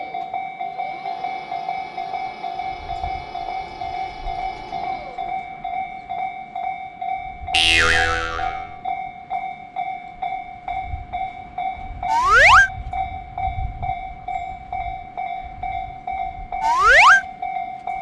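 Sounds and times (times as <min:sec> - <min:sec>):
rising whistle-like sweep: 0:12.1 - 0:12.7, 0:16.6 - 0:17.2.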